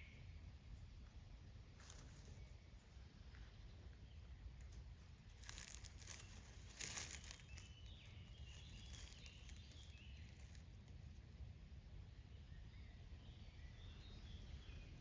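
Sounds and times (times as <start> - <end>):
crackling rustles: 1.8 - 2.6, 3.3 - 11.3.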